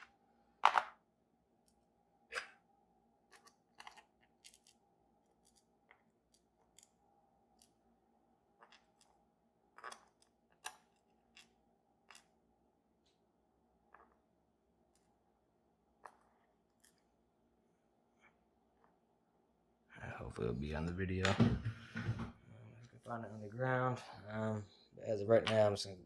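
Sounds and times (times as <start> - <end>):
small objects clicking and tapping: 3.3 - 4.8, 5.4 - 7.8, 8.6 - 9.2, 9.8 - 12.3, 16.0 - 17.1.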